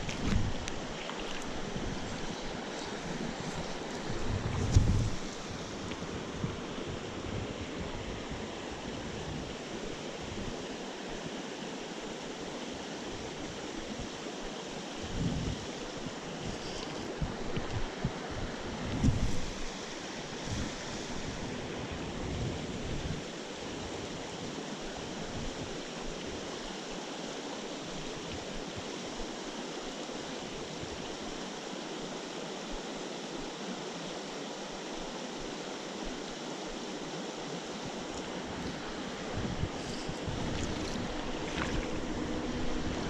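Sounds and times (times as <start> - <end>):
wind rumble on microphone: 0.0 - 10.7, 14.8 - 26.8, 37.5 - 43.0
creek flowing: 0.0 - 43.0.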